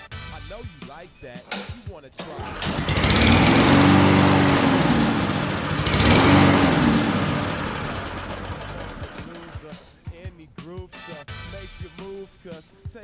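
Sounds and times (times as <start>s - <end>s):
lawn mower engine surging: 1.5s - 9.8s.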